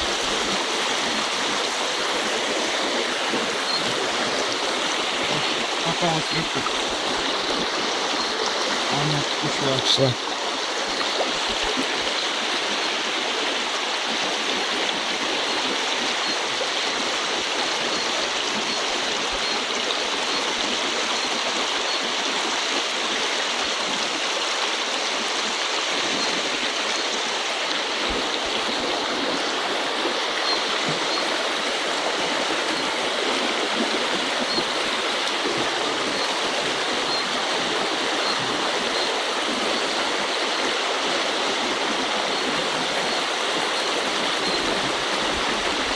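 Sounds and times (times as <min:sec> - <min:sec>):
river water rushing: 0:00.0 - 0:45.9.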